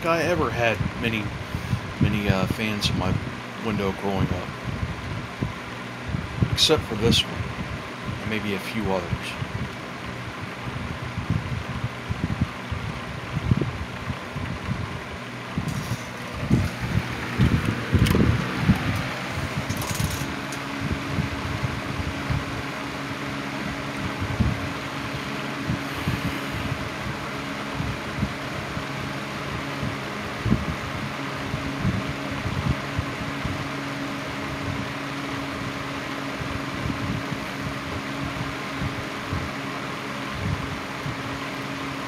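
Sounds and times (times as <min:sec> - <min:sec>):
low thumps of moving air: 0:00.0 - 0:03.6, 0:04.3 - 0:08.3, 0:09.1 - 0:42.0
box fan motor hum: 0:00.0 - 0:42.0
rush of air: 0:10.7 - 0:22.4, 0:24.0 - 0:28.4.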